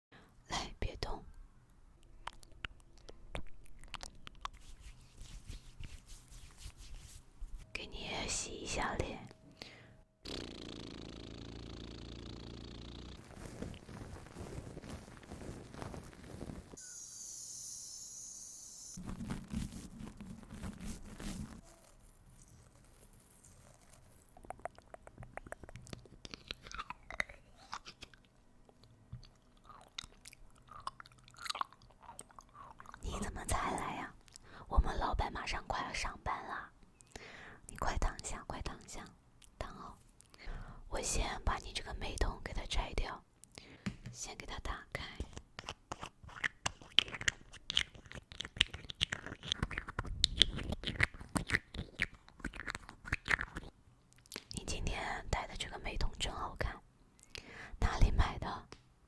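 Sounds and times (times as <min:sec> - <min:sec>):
wet mouth clicks and smacks: 0:02.2 - 0:05.0, 0:24.4 - 0:33.1, 0:45.2 - 0:54.6
squelching mouth glides: 0:10.2 - 0:13.2
crisp clicks and scratches: 0:13.2 - 0:16.8, 0:19.0 - 0:26.6, 0:45.2 - 0:53.7.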